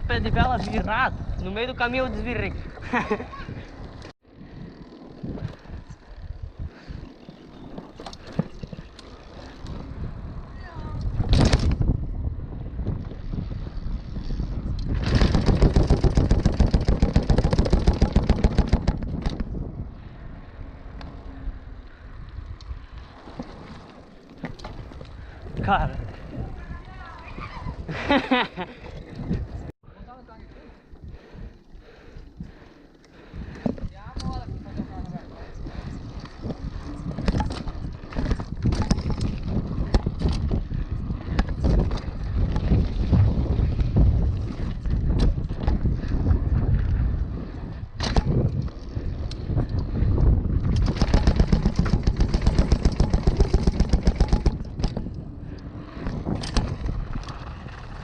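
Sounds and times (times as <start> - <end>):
wind buffeting microphone: 0.0 - 23.4, 24.4 - 58.0
mountain bike rattling over rough ground: 0.1 - 29.7, 31.0 - 58.0
bike clattering and knocking: 14.8 - 19.5, 36.4 - 46.0, 50.6 - 55.2.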